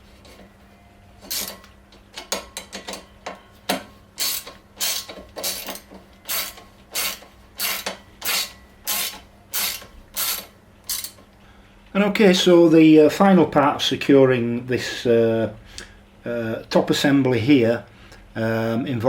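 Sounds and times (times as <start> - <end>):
ratchet spanner clicking: 4.2 - 11.2.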